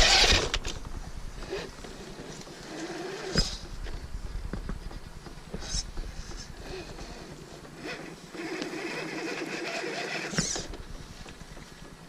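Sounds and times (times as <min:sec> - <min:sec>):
rc car motor whining: 0:00.0 - 0:00.7, 0:05.6 - 0:10.9
tires clattering over ground: 0:00.0 - 0:12.0.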